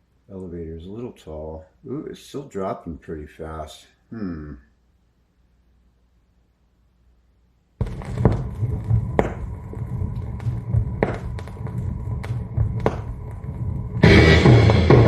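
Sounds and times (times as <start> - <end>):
record playback through speakers: 0.0 - 15.0
vinyl pops and clicks: 7.8 - 15.0.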